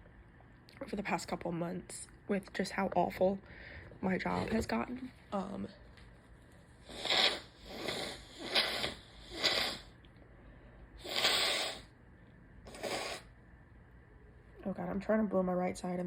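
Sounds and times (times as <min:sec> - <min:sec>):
person blowing nose: 0:06.8 - 0:09.9, 0:11.0 - 0:11.9, 0:12.7 - 0:13.3.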